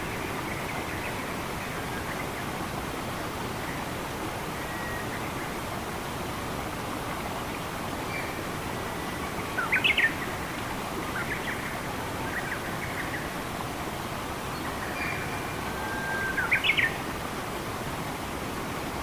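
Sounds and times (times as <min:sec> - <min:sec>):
rushing forest water: 0:00.0 - 0:19.0
songbirds chirping: 0:07.2 - 0:17.3.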